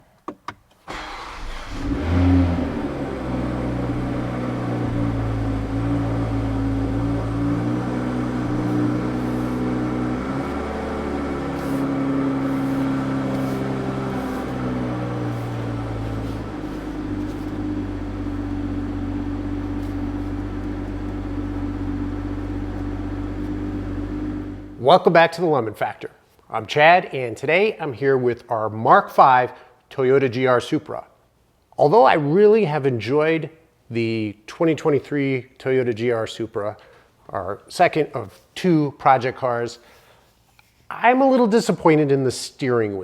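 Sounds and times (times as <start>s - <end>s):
car engine starting and idling: 0.8s - 24.8s.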